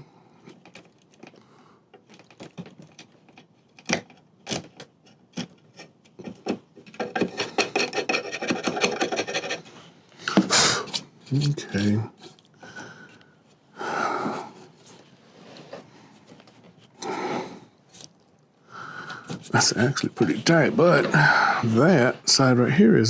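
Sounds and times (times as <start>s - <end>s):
wood scraping against wood: 5.8s - 12.4s, 14.8s - 18.2s.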